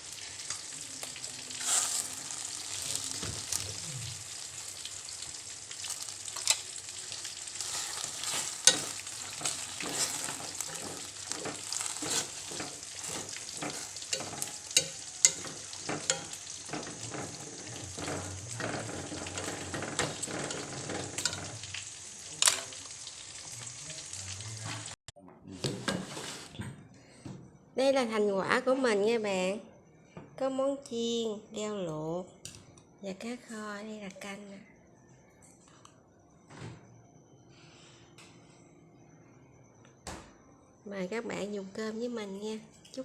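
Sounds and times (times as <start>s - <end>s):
food sizzling in hot oil: 0.0s - 25.0s
utensil scraping a pan: 1.6s - 4.8s, 5.8s - 21.7s, 25.7s - 26.6s.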